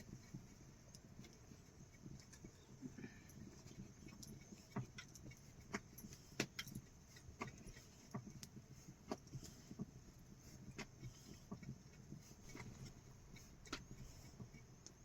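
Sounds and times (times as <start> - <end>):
light clinks and knocks: 0.2 - 9.9.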